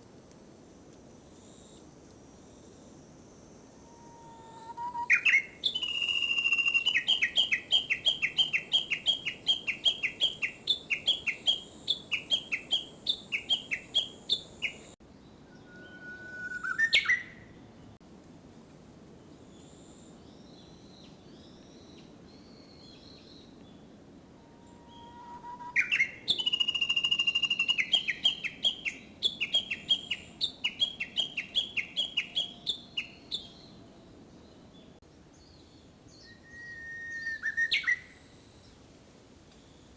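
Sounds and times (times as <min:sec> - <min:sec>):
faint bird chirps: 0:03.8 - 0:17.6, 0:24.4 - 0:38.8
bird whistle with upward sweep: 0:04.0 - 0:14.8, 0:15.5 - 0:17.4, 0:24.8 - 0:33.5, 0:36.2 - 0:38.1
bush warbler repeated notes: 0:04.8 - 0:17.3, 0:25.0 - 0:33.6.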